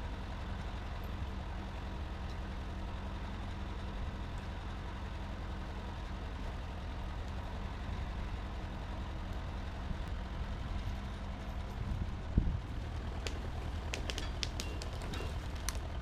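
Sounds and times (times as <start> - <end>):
tractor engine running: 0.0 - 16.0.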